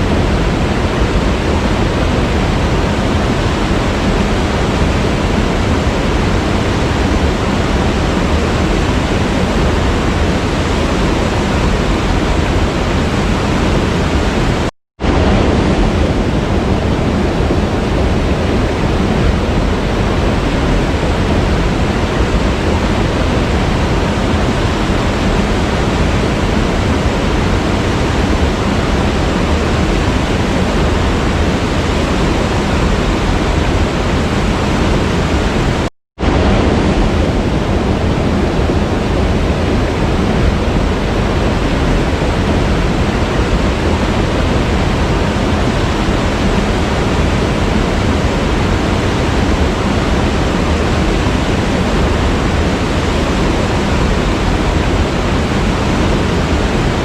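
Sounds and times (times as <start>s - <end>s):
waterfall roaring: 0.0s - 57.0s.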